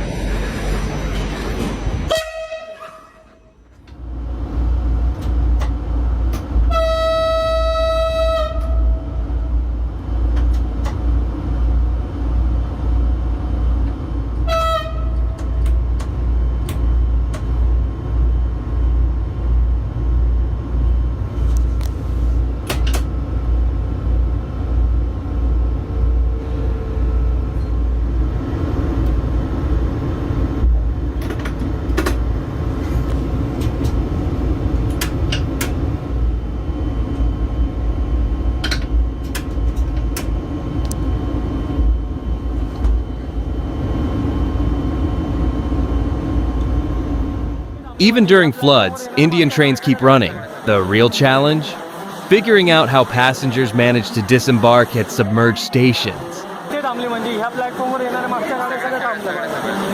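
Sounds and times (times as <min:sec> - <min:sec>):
train rumbling: 0:00.0 - 0:59.9
train horn blast: 0:02.1 - 0:03.6, 0:06.6 - 0:09.2, 0:14.4 - 0:15.5.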